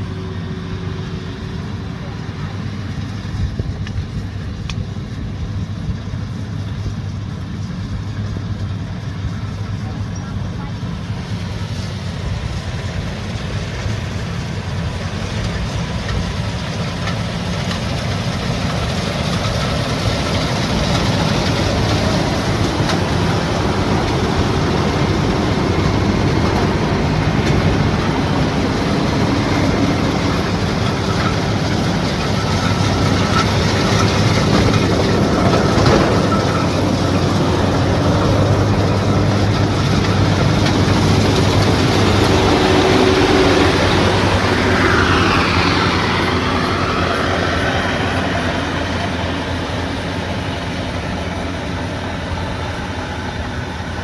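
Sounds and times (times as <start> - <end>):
combine harvester engine hum: 0.0 - 54.0
machinery clattering: 6.6 - 54.0.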